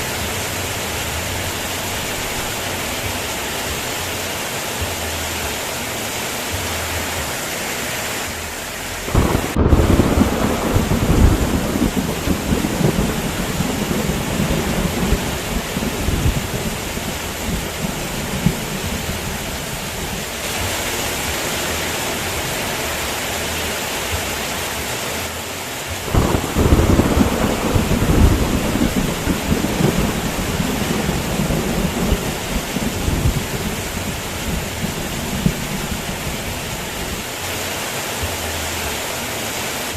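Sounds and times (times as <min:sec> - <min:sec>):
heavy rain: 0:00.0 - 0:39.9
thunder rumbling: 0:09.0 - 0:21.4, 0:26.0 - 0:37.4.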